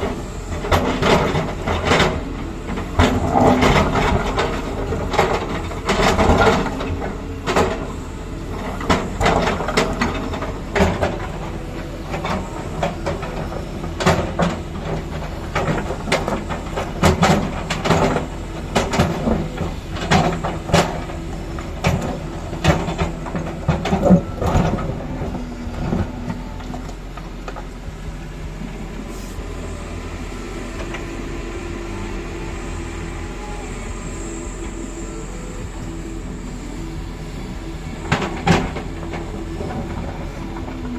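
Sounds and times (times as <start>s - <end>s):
digging knocks and clatter: 0.0s - 27.8s, 37.2s - 40.9s
excavator diesel engine running: 0.0s - 40.9s.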